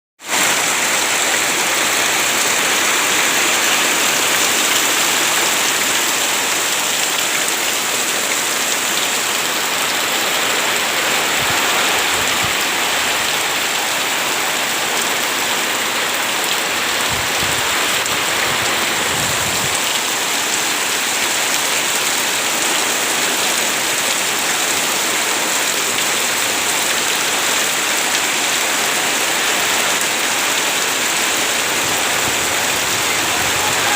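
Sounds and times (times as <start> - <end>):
heavy rain: 0.2 - 33.9.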